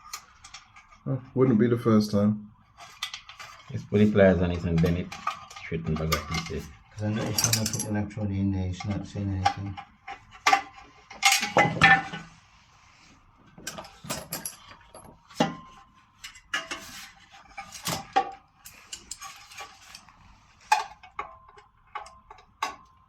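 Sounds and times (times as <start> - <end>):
metal parts clinking and clanking: 4.6 - 8.0, 8.8 - 12.3, 13.6 - 23.0.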